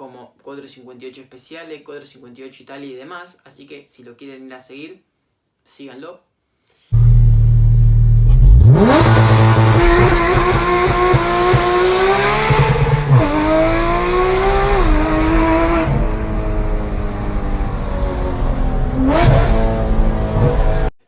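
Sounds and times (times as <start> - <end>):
sports car engine revving: 7.0 - 20.9.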